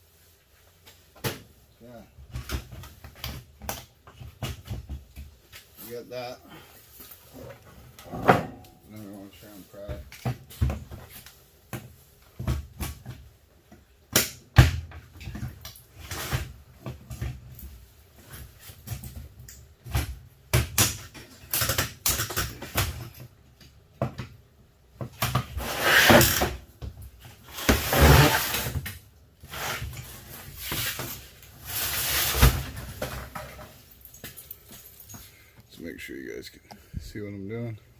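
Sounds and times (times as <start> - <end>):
scraping sounds: 27.4 - 28.7, 29.5 - 33.8.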